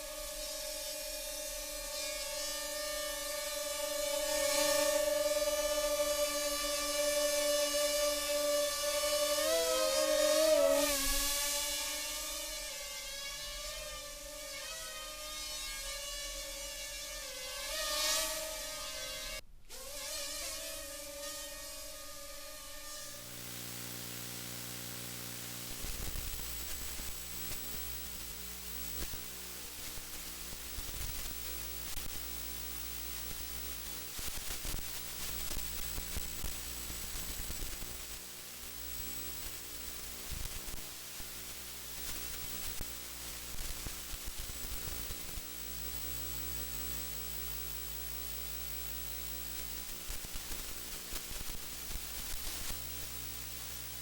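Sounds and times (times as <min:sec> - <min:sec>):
static hiss: 0:00.0 - 0:54.0
low electrical hum: 0:20.6 - 0:54.0.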